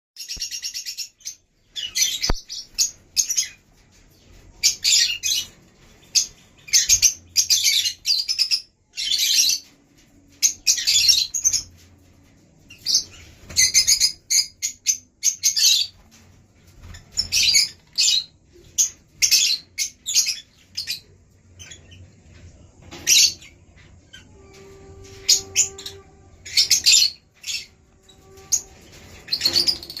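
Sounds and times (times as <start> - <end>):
bird chicks chirping shrilly: 25.1 - 30.0.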